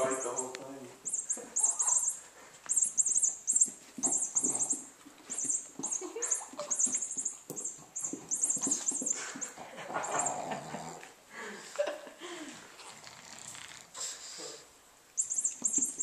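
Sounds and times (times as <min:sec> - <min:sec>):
squeaky toy squeaking: 0:00.0 - 0:10.4, 0:15.2 - 0:16.0
dog chewing: 0:01.2 - 0:10.5.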